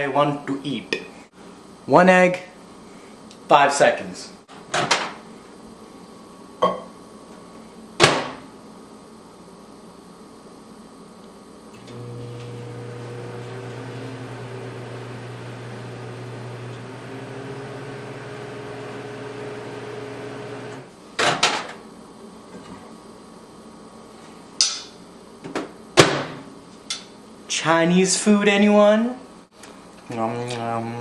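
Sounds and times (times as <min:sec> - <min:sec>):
microwave oven humming: 0:11.2 - 0:21.0.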